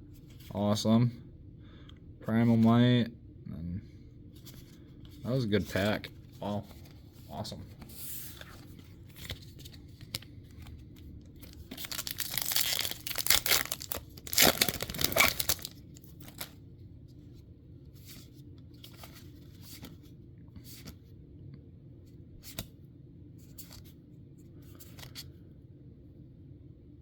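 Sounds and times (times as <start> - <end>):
foil wrapper tearing and crinkling: 11.5 - 16.5.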